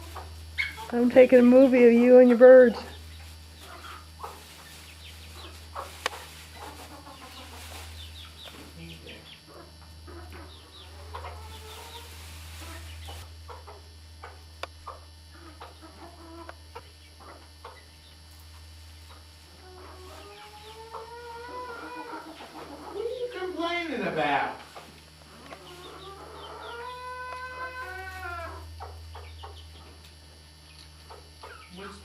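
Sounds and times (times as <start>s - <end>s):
birds clucking and chirping: 0.0s - 23.7s, 24.7s - 32.0s
steady low hum: 0.0s - 32.0s.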